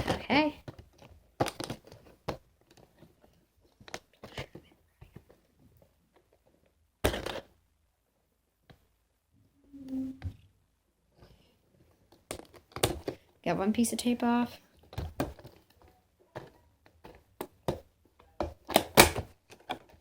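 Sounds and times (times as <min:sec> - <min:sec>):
packaging clicks and rustles: 0:00.0 - 0:05.5, 0:14.7 - 0:20.0.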